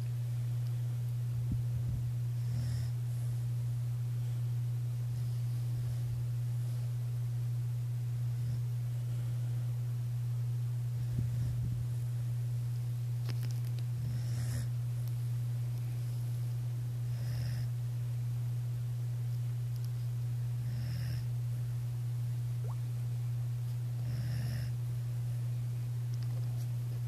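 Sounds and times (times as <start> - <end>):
low electrical hum: 0.0 - 27.0
dog breathing softly: 10.9 - 11.7.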